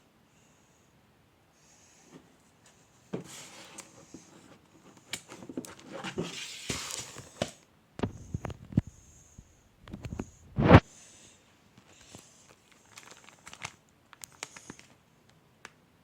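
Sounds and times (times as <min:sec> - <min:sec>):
rustling: 0:11.7 - 0:15.0.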